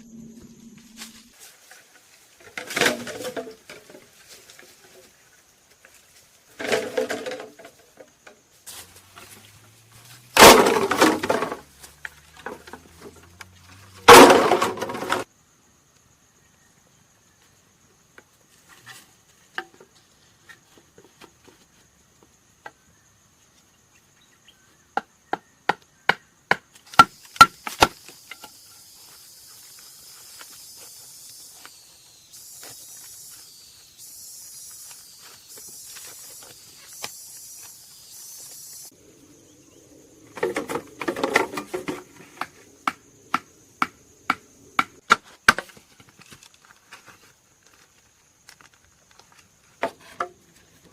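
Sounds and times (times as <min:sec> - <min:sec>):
wood crashing and breaking: 0:02.5 - 0:03.6, 0:10.4 - 0:11.7, 0:14.0 - 0:15.2, 0:40.4 - 0:42.1
steady high hiss: 0:27.0 - 0:45.1.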